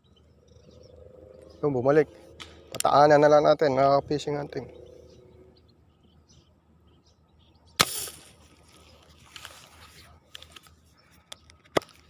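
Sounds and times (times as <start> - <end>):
gunshot snap: 7.8 - 8.3.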